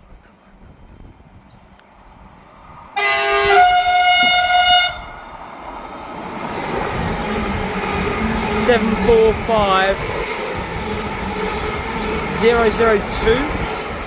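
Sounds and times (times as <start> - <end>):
electric train running: 2.8 - 14.0
two-note train horn: 3.0 - 5.2.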